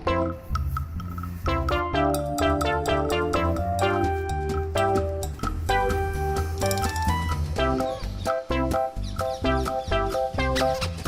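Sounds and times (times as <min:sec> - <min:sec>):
plucked guitar notes: 0:00.0 - 0:10.8
bass line and beat: 0:00.0 - 0:11.0.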